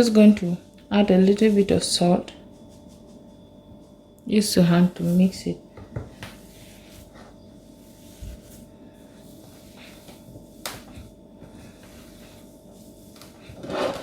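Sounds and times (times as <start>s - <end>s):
hands mixing food in a plate: 4.7s - 13.6s.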